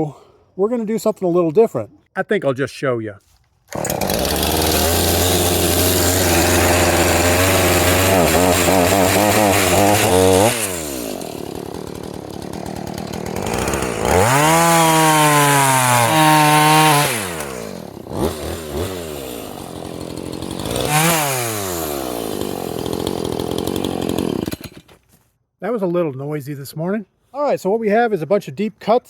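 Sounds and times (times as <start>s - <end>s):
chainsaw cutting wood: 3.7s - 25.2s.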